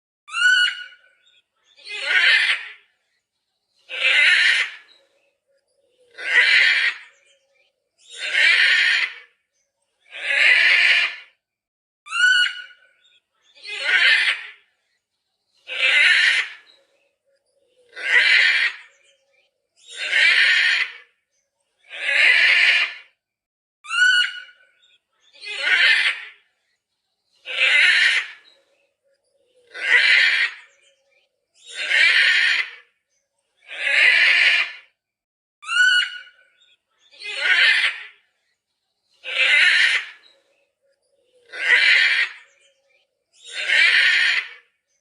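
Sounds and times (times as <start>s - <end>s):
macaw squawking: 0.3s - 1.0s, 3.9s - 4.9s, 6.0s - 7.2s, 12.1s - 12.8s, 15.7s - 16.7s, 17.8s - 19.0s, 23.8s - 24.6s, 25.3s - 26.4s, 27.4s - 28.5s, 29.6s - 31.0s, 31.6s - 32.8s, 35.6s - 38.2s, 39.2s - 40.4s, 41.4s - 42.8s, 43.4s - 44.7s.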